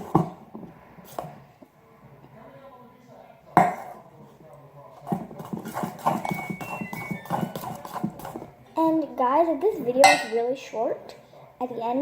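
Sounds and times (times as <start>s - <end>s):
utensil scraping and clinking bowl: 4.9s - 8.6s, 10.0s - 10.4s.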